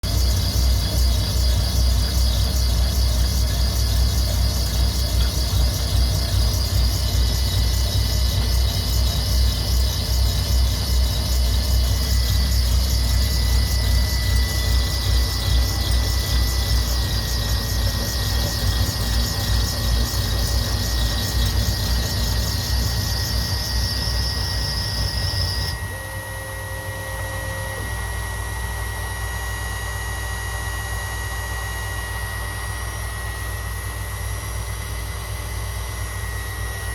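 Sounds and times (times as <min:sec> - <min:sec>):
machine humming: 0:00.0 - 0:28.4
thin high whine: 0:00.0 - 0:36.9.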